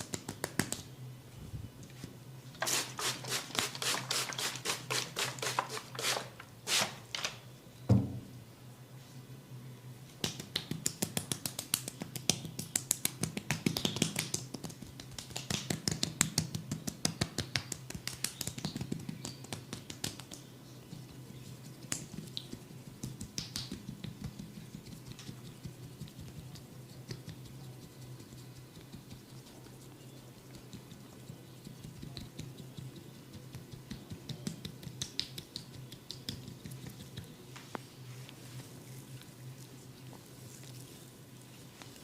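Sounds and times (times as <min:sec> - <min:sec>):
percussive massage taps: 0:00.0 - 0:00.9, 0:10.2 - 0:20.5, 0:21.9 - 0:26.5, 0:31.7 - 0:37.3.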